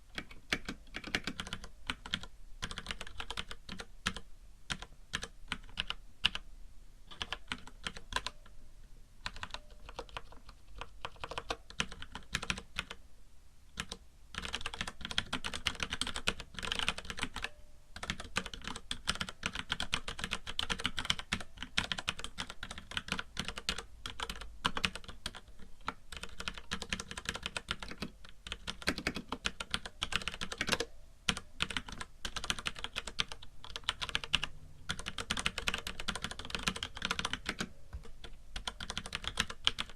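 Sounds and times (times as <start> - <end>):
white noise hiss: 0.0 - 39.9
mechanical keyboard typing: 0.1 - 6.4, 7.1 - 8.4, 9.2 - 13.0, 13.8 - 39.9.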